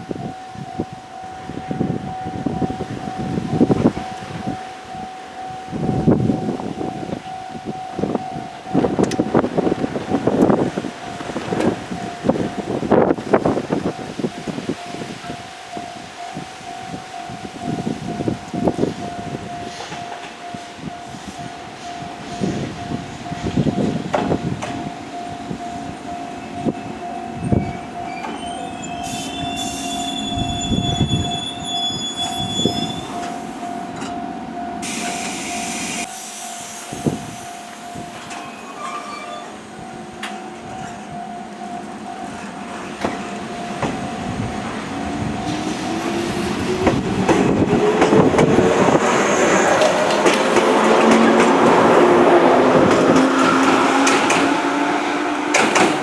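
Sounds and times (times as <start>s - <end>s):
electric train steady tone: 0.0s - 56.0s
air hiss: 34.8s - 37.9s.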